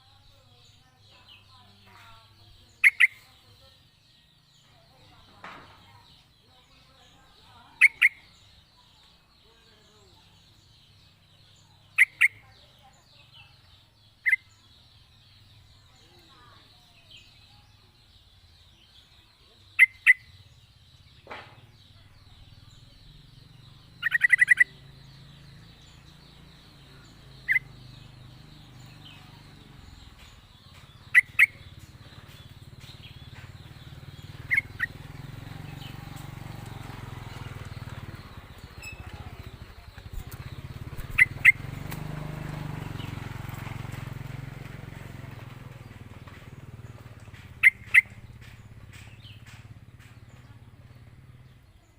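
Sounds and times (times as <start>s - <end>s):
bird bubbling calls: 41.0s - 41.6s.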